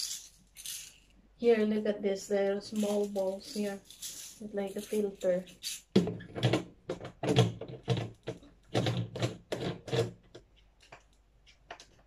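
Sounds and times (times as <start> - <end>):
plastic parts rattling: 0.0 - 1.2, 2.6 - 10.5.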